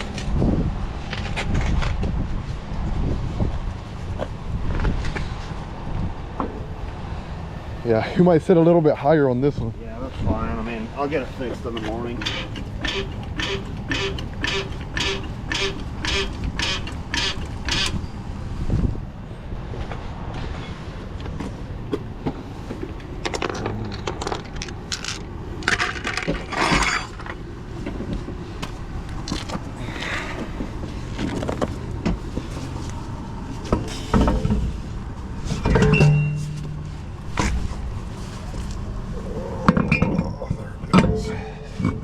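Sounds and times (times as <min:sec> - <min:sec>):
wind noise: 0:00.0 - 0:07.8, 0:09.5 - 0:42.0
hand tools clanking on metal: 0:11.6 - 0:18.0, 0:25.0 - 0:27.4, 0:35.5 - 0:37.6.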